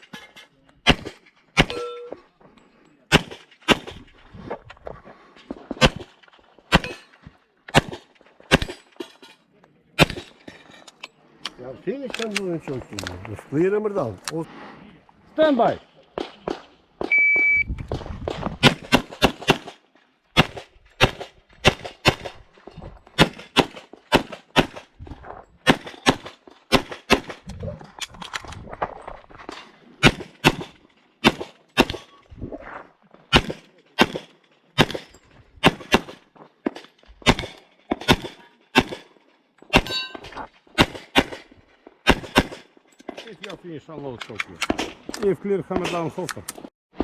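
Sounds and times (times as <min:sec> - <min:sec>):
pistol shots: 0:07.7 - 0:09.0, 0:10.0 - 0:10.4, 0:18.6 - 0:19.8, 0:20.4 - 0:22.4, 0:23.2 - 0:24.9, 0:25.6 - 0:27.4, 0:30.0 - 0:32.2, 0:33.3 - 0:39.1, 0:40.7 - 0:43.2.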